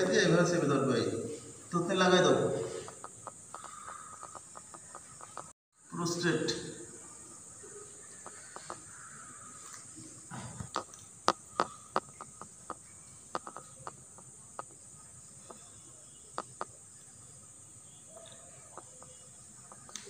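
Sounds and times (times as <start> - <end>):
high-pitched insect chorus: 0.0 - 20.0
sharp clicks: 2.8 - 5.5, 10.6 - 14.8.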